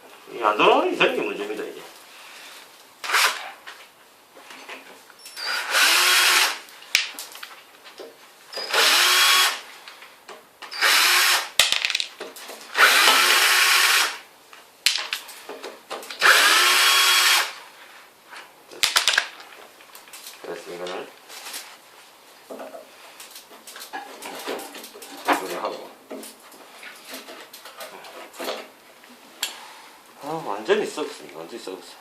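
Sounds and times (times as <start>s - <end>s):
power drill spinning: 5.3s - 6.6s, 8.5s - 9.7s, 10.7s - 11.6s, 12.7s - 14.2s, 16.2s - 17.6s.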